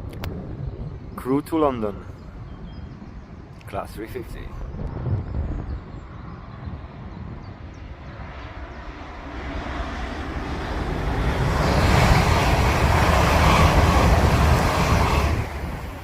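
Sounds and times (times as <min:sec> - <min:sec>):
train wheels rumbling on rail: 0:10.1 - 0:16.0.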